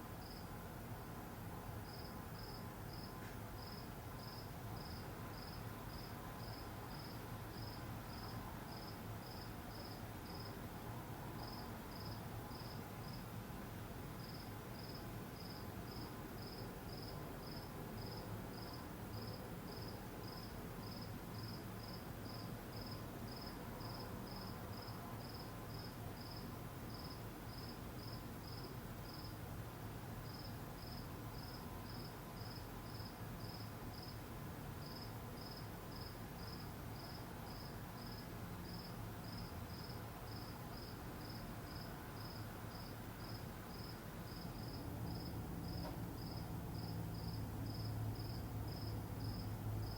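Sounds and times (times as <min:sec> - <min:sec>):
insect chirping: 0:00.2 - 0:00.5, 0:01.9 - 0:10.5, 0:14.2 - 0:29.3, 0:34.8 - 0:49.9.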